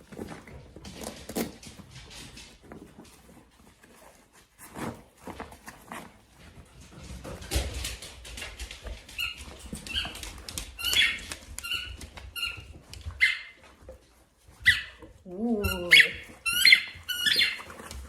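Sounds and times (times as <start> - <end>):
rustling: 0.0 - 18.0
squeaky toy squeaks: 10.8 - 13.6, 15.6 - 17.7.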